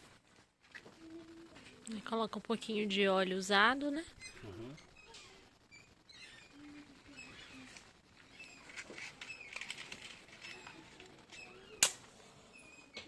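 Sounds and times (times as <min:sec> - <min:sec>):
paper crackling and rustling: 0:06.6 - 0:11.3.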